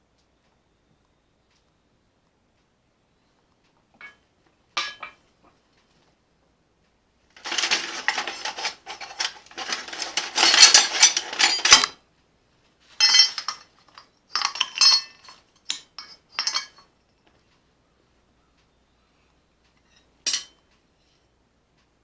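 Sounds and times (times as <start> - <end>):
steel clinking and scraping on metal: 4.0 - 4.2, 4.8 - 5.2, 7.4 - 12.0, 12.8 - 17.0, 19.8 - 21.2
short metal rattles: 7.4 - 12.0.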